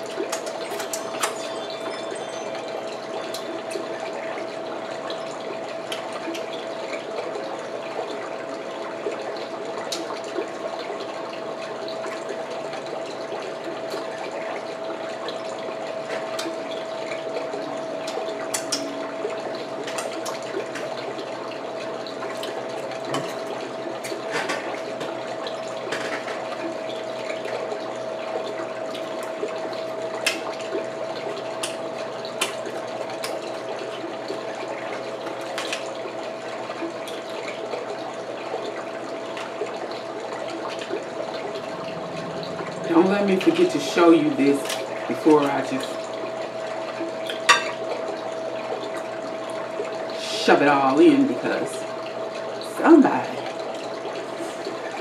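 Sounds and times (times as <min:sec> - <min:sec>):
constant hum: 0:00.0 - 0:55.0.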